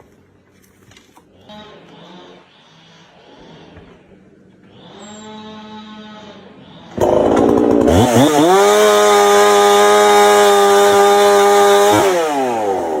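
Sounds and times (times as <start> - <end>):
chainsaw running: 6.9 - 13.0.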